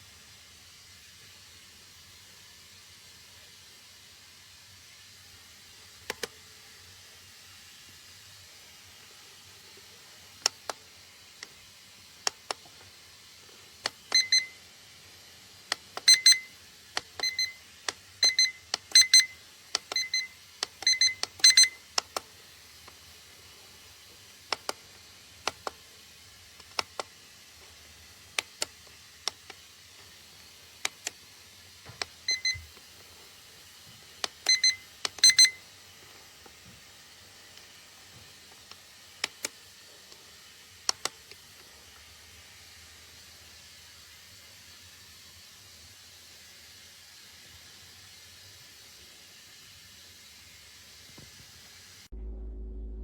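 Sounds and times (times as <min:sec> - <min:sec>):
alarm clock high-pitched beeps: 0:14.1 - 0:14.6, 0:16.0 - 0:16.6, 0:17.2 - 0:17.6, 0:18.2 - 0:21.9, 0:32.3 - 0:32.7, 0:34.5 - 0:35.7.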